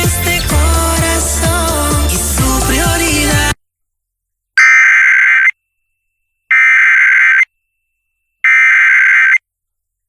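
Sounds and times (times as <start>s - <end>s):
harsh buzzy digital data tones: 4.6s - 5.6s, 6.5s - 7.5s, 8.4s - 9.4s.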